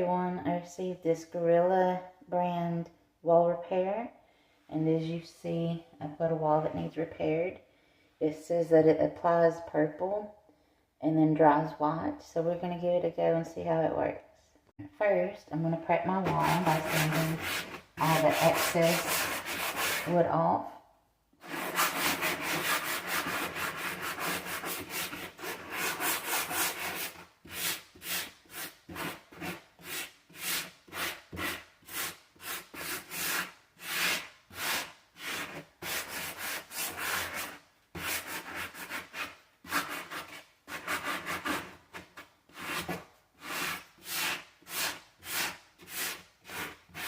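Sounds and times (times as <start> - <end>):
sandpaper rubbing on wood: 16.2 - 20.2, 21.4 - 47.0.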